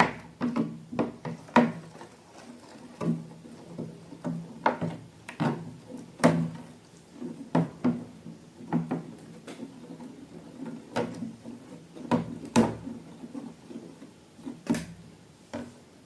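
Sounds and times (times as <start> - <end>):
objects knocking on hard surface: 7.5 - 9.7.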